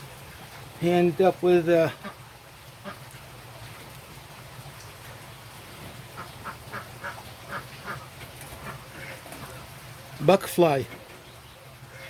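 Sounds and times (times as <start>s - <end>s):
duck quacking: 6.2s - 9.2s.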